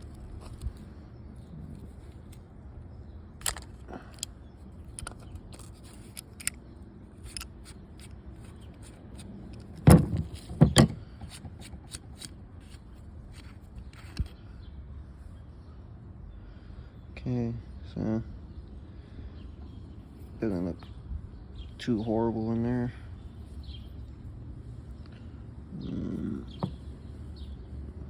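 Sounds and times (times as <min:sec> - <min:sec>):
small metal parts clicking: 0:03.4 - 0:12.8
metal knocks: 0:09.8 - 0:11.0.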